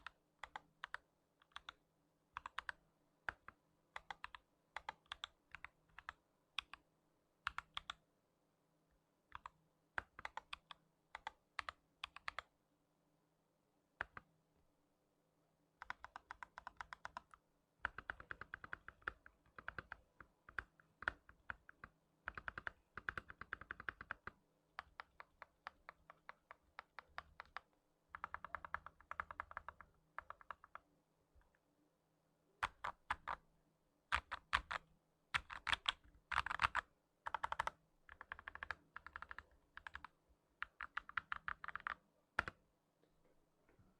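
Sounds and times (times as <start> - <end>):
mechanical keyboard typing: 2.4 - 2.7, 3.3 - 6.8, 9.3 - 12.4, 15.8 - 30.8, 32.6 - 33.4, 34.1 - 42.6.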